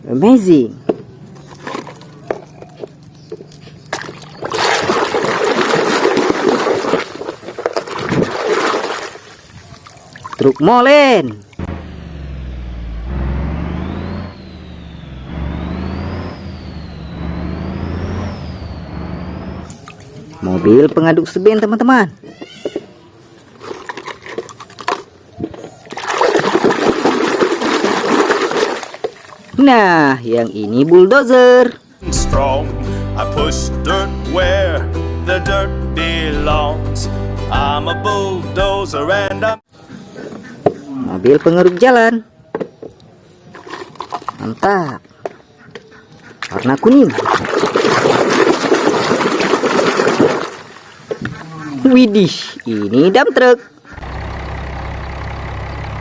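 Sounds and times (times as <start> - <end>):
water running and splashing: 3.8 - 11.6, 25.8 - 31.0, 43.5 - 44.7, 46.4 - 53.0.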